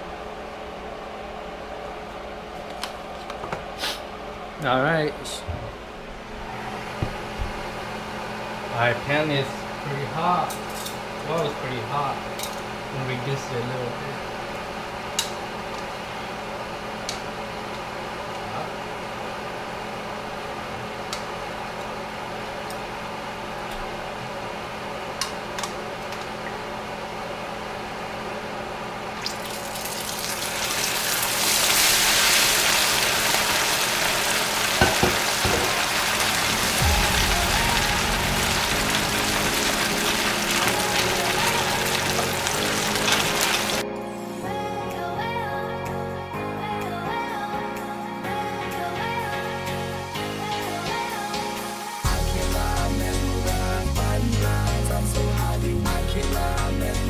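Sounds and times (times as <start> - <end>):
oil sizzling in frying pan: 29.2 - 43.8
low steady hum: 34.6 - 47.2.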